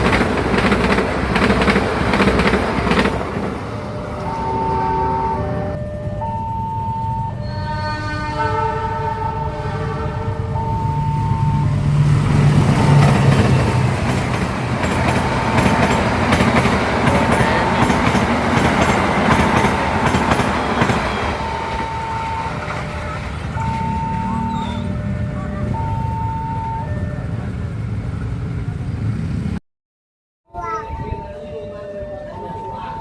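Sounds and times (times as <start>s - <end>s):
wheel clatter over rails: 0.0s - 4.4s
steady high tone: 1.7s - 27.6s, 30.6s - 33.0s
train horn chord: 3.8s - 6.3s, 7.2s - 11.8s.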